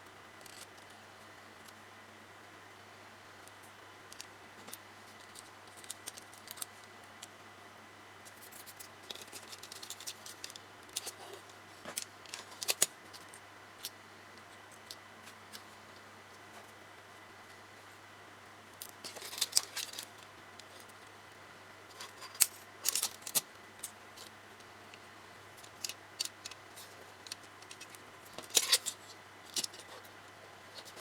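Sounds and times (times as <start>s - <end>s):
plastic parts clicking and scraping: 4.1s - 7.3s, 8.3s - 14.0s, 18.8s - 21.0s, 21.9s - 31.0s.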